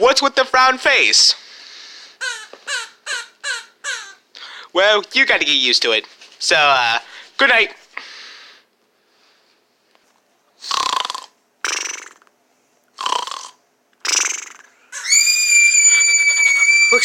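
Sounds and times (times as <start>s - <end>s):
rasping snores: 10.6s - 12.2s, 13.0s - 13.6s
high-pitched whistle: 15.0s - 17.0s.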